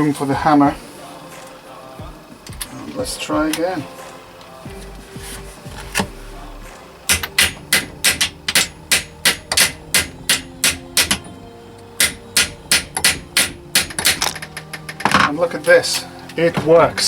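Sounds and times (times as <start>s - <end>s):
hammer tapping on metal bolt: 7.1s - 11.3s, 12.0s - 15.2s.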